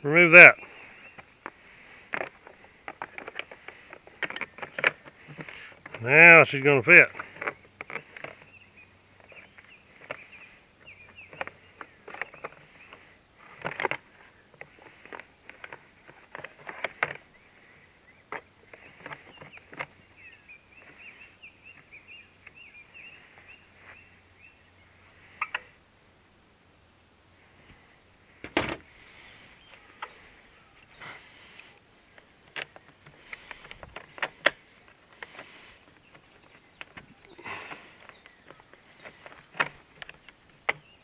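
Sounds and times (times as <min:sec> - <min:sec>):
faint bird chirping: 0:00.0 - 0:25.9, 0:27.3 - 0:41.0
knocks and clicks of parts: 0:28.4 - 0:28.8.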